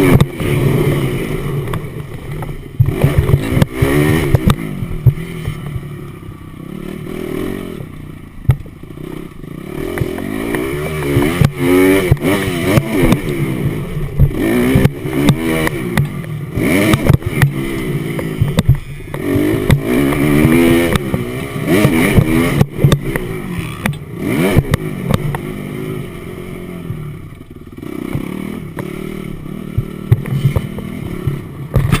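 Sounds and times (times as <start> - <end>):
motocross bike engine revving: 0.0 - 32.0
bike knocking and clattering: 1.7 - 6.3, 8.4 - 9.0, 9.8 - 13.4, 14.1 - 25.5, 29.6 - 32.0.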